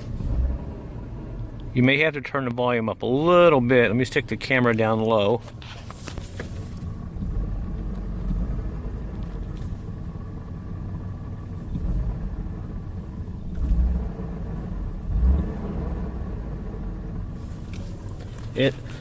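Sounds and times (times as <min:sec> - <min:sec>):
car engine revving: 0:00.0 - 0:01.8, 0:06.1 - 0:19.0.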